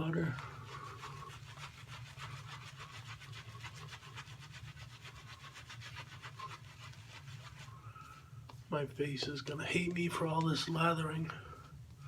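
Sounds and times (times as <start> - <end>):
shaving brush swirling lather: 0.0 - 8.2.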